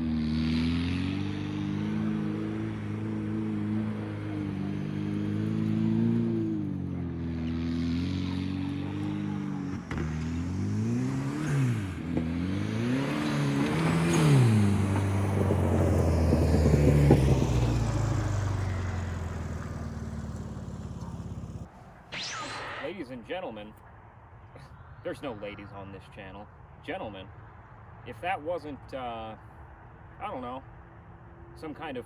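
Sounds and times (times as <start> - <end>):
turbocharged engine revving: 0.0 - 22.9
loud turbo rushing noise: 22.1 - 23.1.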